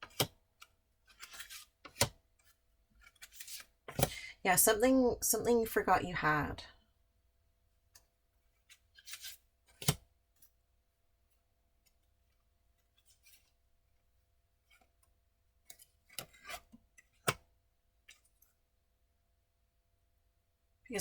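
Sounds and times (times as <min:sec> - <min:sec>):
cards snapping and tapping on table: 0:00.0 - 0:00.4, 0:01.2 - 0:02.2.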